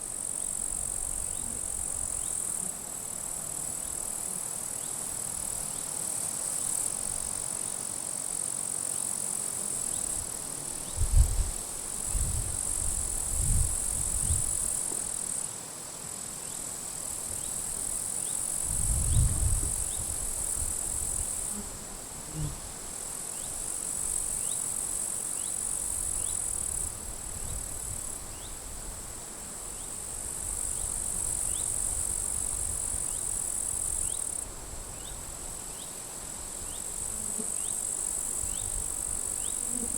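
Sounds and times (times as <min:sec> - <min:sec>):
grasshoppers stridulating: 0:00.0 - 0:39.9
wind buffeting microphone: 0:11.0 - 0:14.6, 0:18.6 - 0:21.3.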